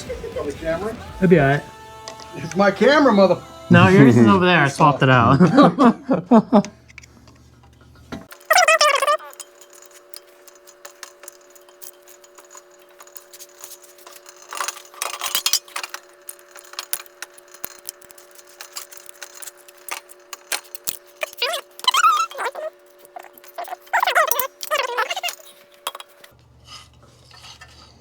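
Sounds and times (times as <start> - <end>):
steady hum: 0.3 - 27.9
metal tools clinking and rattling: 8.2 - 28.0.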